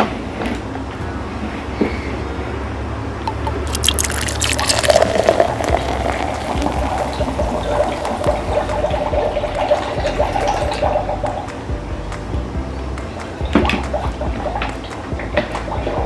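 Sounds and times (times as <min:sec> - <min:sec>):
water splashing into plastic: 0:03.3 - 0:09.0
water pouring trickle: 0:03.3 - 0:09.8.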